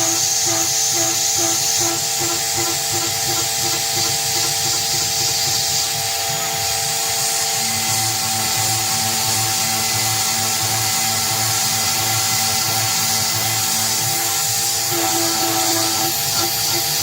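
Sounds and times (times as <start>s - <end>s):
milling machine whine and hiss: 0.0s - 17.0s.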